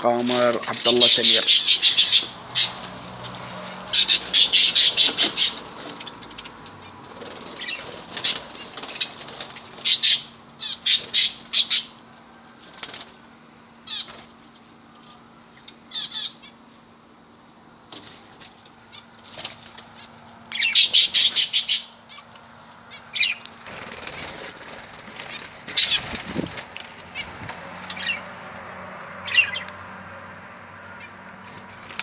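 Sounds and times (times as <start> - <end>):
lovebirds chirping shrilly: 0.3 - 12.0, 13.8 - 14.3, 15.6 - 16.6, 19.9 - 24.5, 25.2 - 28.3, 29.2 - 29.7.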